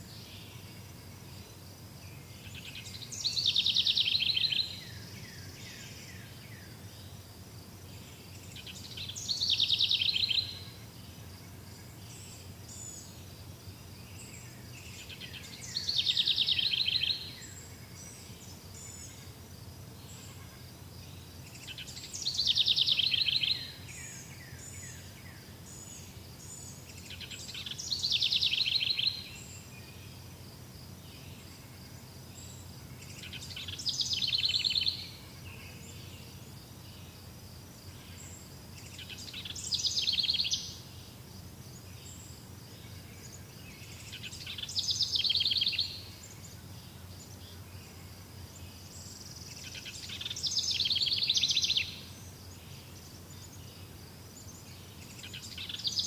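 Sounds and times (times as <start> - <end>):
songbird trilling: 8.6 - 10.7, 15.1 - 17.5, 21.6 - 24.2, 27.1 - 29.6, 38.9 - 40.8, 43.8 - 46.1, 49.5 - 52.1, 55.0 - 56.0.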